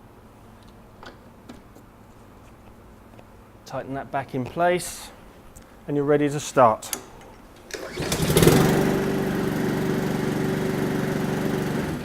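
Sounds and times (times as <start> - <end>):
lawnmower engine starting: 7.6 - 12.0.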